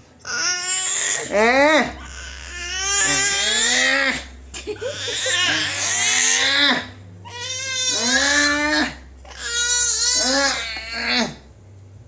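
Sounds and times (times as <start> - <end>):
baby crying: 2.0 - 4.2, 4.8 - 11.3.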